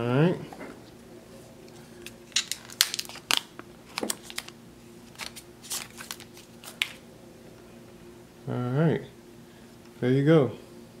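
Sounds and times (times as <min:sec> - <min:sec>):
faint steady hum: 0:00.0 - 0:11.0
plastic packaging crinkling: 0:02.2 - 0:07.0.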